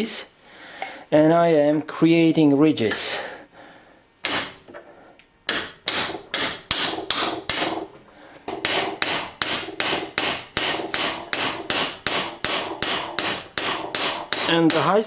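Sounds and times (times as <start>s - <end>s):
hammer tapping on metal: 4.2s - 4.7s, 5.5s - 15.0s.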